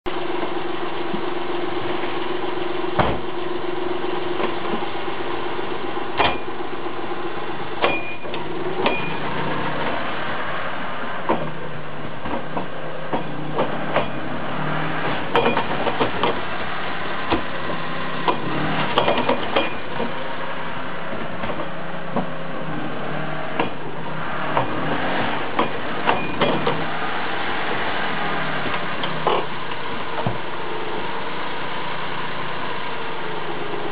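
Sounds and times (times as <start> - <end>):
truck engine hum: 0.1 - 33.9
sharp clicks and knocks: 15.1 - 16.4, 18.2 - 20.2, 23.6 - 23.8, 25.5 - 26.8.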